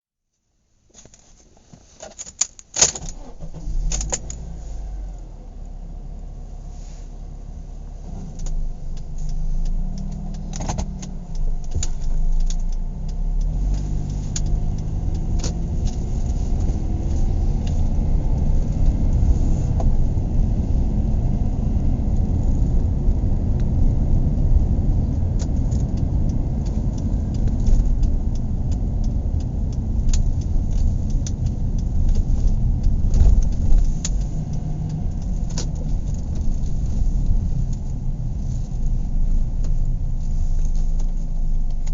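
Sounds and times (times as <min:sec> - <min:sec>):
road rumble: 0:00.9 - 0:41.9
small clicks and rattles: 0:01.0 - 0:03.3
car engine accelerating: 0:03.2 - 0:41.9.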